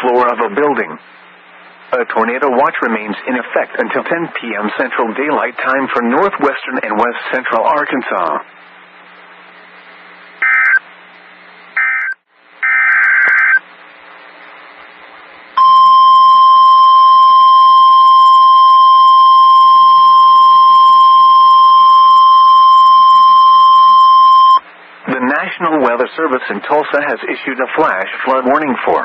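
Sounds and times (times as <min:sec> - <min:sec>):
steady warning alarm tone: 0:11.8 - 0:13.6, 0:15.6 - 0:24.6.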